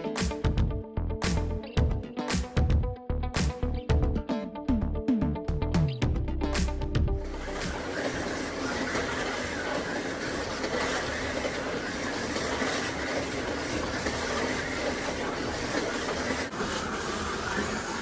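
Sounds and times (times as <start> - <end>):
slot cars whirring: 7.2 - 18.0.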